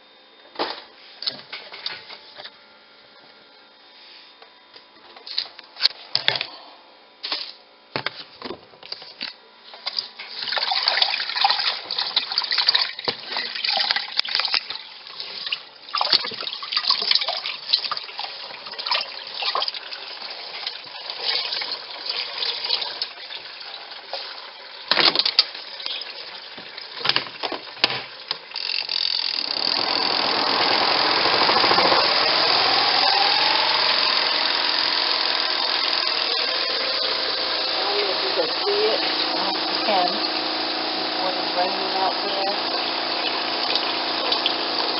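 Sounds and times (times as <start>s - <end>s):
spin dryer motor whine: 0.0s - 44.9s
wet laundry splashing and knocking: 15.9s - 17.4s.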